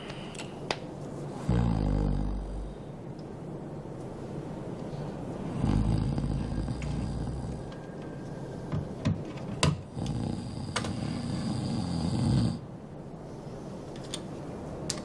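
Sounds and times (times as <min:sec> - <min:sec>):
man snoring: 0:01.4 - 0:02.8, 0:05.6 - 0:07.7, 0:09.9 - 0:12.7.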